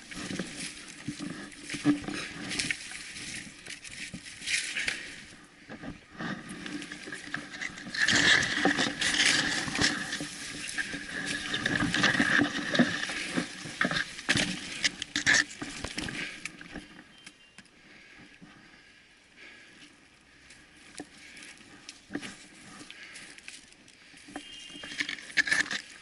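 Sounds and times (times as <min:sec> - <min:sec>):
leaves and brush rustling: 0:00.0 - 0:26.0
twigs snapping: 0:06.6 - 0:17.4.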